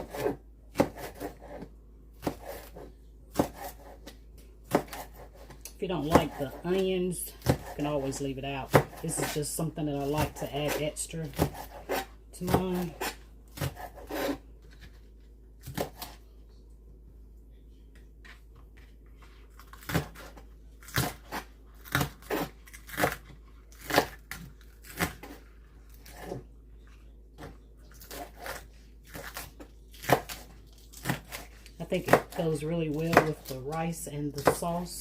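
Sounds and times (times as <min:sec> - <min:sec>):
knife slicing on cutting board: 0:00.0 - 0:04.1.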